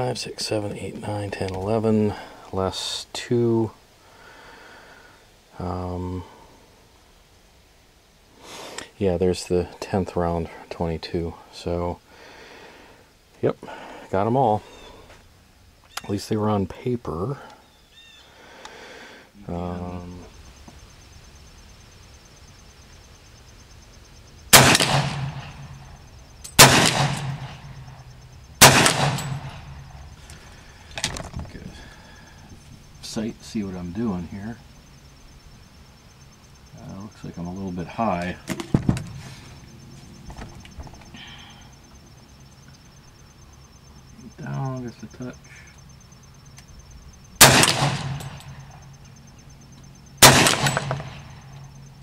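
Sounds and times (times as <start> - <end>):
gunshots with long echo: 24.5 - 30.1, 47.4 - 48.7, 50.2 - 51.5.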